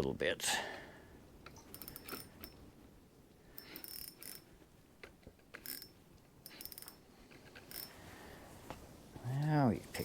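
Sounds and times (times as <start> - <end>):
fishing reel ratcheting: 1.6 - 2.6, 3.6 - 4.5, 5.5 - 8.0.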